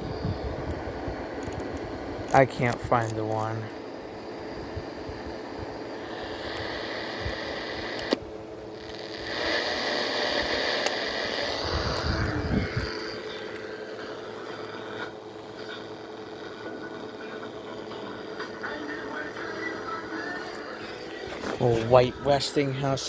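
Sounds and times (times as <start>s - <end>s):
radio static hiss: 0.0s - 23.0s
radio click: 6.2s - 14.8s.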